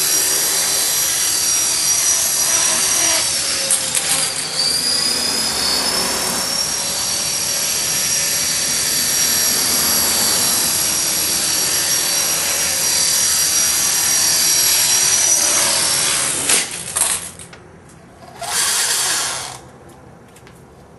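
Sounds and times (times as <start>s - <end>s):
helicopter rotor whining: 0.0s - 16.4s.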